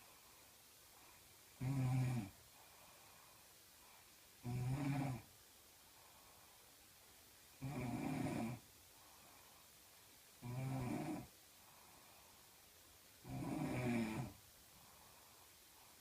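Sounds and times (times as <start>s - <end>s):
woman snoring: 1.6s - 2.4s, 4.4s - 5.3s, 7.6s - 8.6s, 10.4s - 11.3s, 13.2s - 14.4s.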